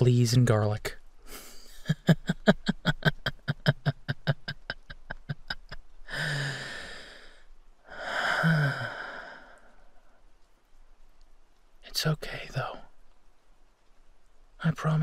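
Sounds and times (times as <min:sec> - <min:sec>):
man laughing: 0:01.3 - 0:06.6
long breathy sighs: 0:06.0 - 0:10.2.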